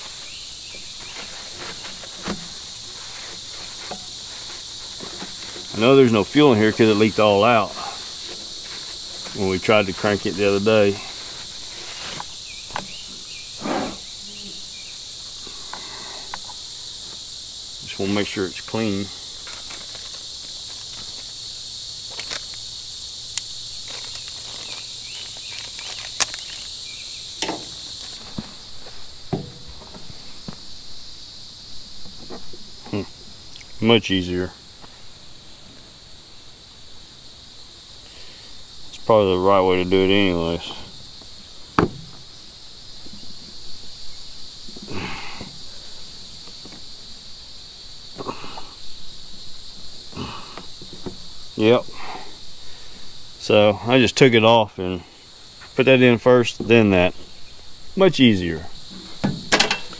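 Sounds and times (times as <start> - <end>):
brief rustling: 0.0 - 14.0
insect chorus buzzing: 0.0 - 59.9.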